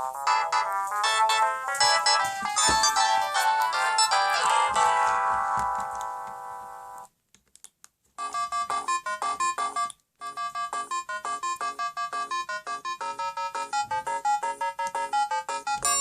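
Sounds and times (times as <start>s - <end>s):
held electronic chord ringtone: 0.2s - 7.1s, 8.2s - 16.0s
quick electronic ringtone notes: 0.3s - 5.3s, 8.2s - 16.0s.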